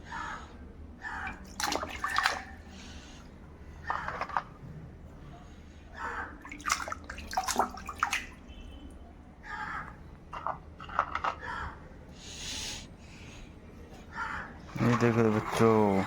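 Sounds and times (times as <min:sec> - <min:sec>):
water splashing and dripping: 0:01.3 - 0:02.6, 0:06.4 - 0:08.5.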